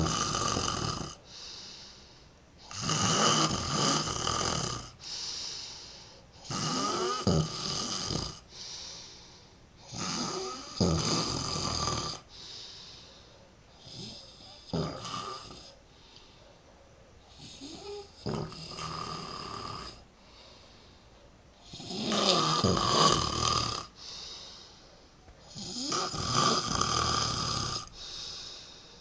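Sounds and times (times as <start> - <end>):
man snoring: 0.0 - 1.6, 2.7 - 5.2, 6.4 - 8.5, 9.9 - 12.3, 13.8 - 15.7, 17.4 - 20.0, 21.7 - 24.2, 25.5 - 28.5
soft breaths: 1.2 - 2.7, 4.9 - 23.1, 23.8 - 29.0.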